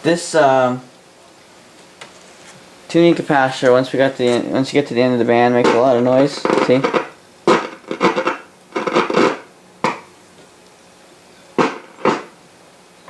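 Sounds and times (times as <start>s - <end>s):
radio speaker crackling: 1.8s - 10.2s, 11.5s - 12.4s.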